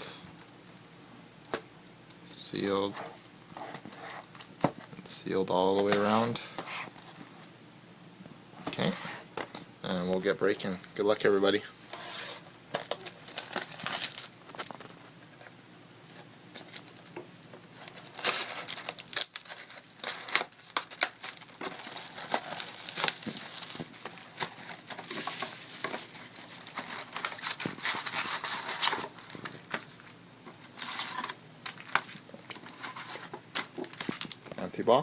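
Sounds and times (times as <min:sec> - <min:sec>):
plastic wrap tearing and crinkling: 0:12.7 - 0:15.1, 0:17.8 - 0:34.7.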